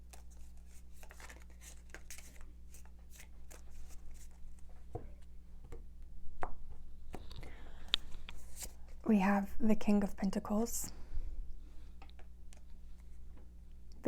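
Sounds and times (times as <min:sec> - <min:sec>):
cards being shuffled: 0:00.0 - 0:04.7, 0:07.1 - 0:08.8.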